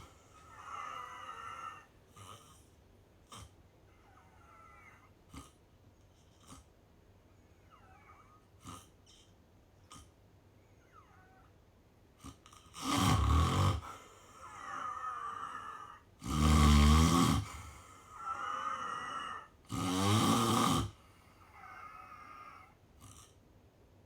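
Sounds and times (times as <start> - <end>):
loud rattling snores: 0.0 - 2.6, 3.3 - 5.6, 6.3 - 6.7, 7.8 - 9.2, 12.2 - 23.4.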